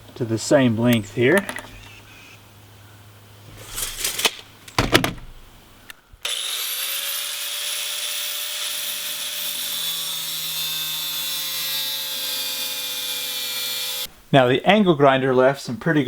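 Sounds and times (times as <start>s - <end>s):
handling knocks: 4.3s - 5.5s
angle grinder cutting pipe: 6.2s - 14.1s.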